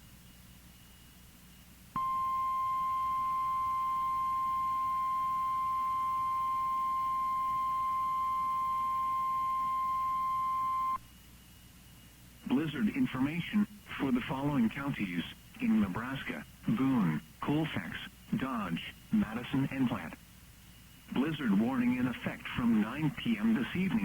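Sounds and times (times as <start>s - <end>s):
steady alarm tone: 2.0s - 11.0s.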